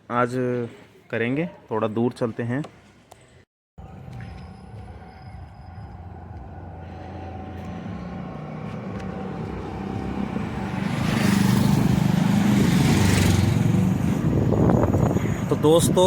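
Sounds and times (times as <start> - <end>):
road and wind rumble: 3.8 - 16.0.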